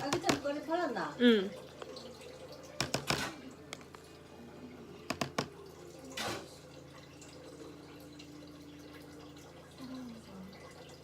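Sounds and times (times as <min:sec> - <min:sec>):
clicks and knocks of kitchen items: 0:00.0 - 0:00.7, 0:02.7 - 0:04.1, 0:05.0 - 0:06.6.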